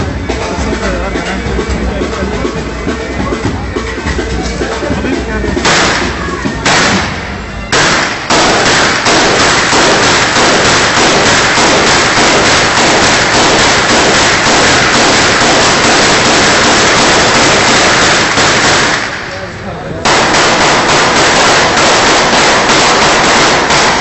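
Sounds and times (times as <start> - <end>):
gunshots: 5.6 - 24.0.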